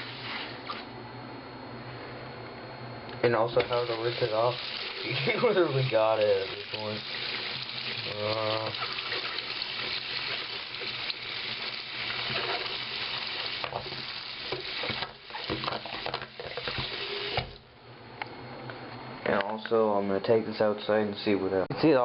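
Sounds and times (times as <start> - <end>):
water running from a tap: 3.6 - 17.6.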